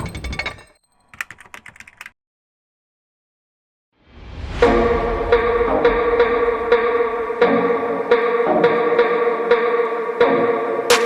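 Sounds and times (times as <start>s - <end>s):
music: 4.6s - 11.0s.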